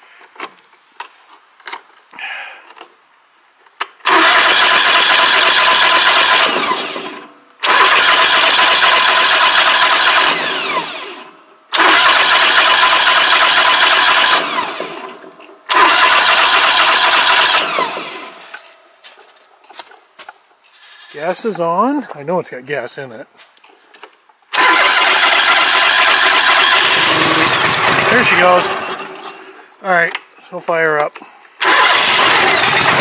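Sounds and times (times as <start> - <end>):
engine cranking without catching: 4.0 - 18.6, 24.5 - 29.6, 31.6 - 33.0.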